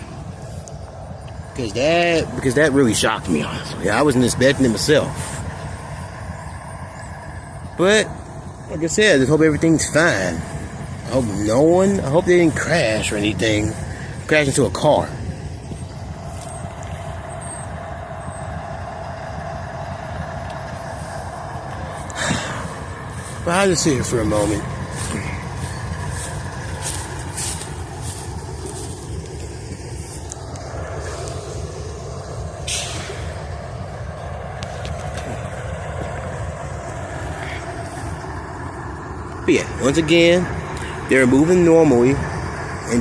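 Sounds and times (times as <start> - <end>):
freight train rumble: 0.0 - 43.0
vehicle engine idling: 0.0 - 43.0
short hiss: 32.6 - 33.4.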